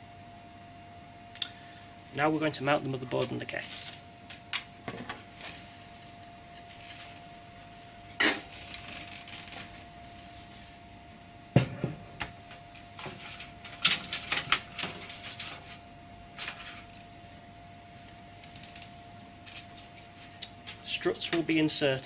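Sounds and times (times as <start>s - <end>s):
computer case parts scraping: 8.2s - 9.8s, 13.0s - 15.8s, 16.4s - 17.0s.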